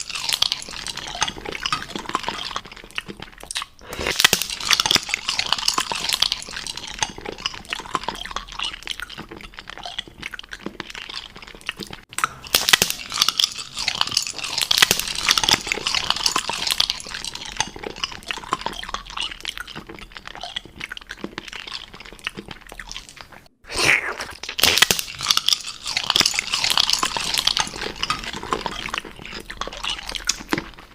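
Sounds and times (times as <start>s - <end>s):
person chewing crunchy food: 0.0s - 30.9s.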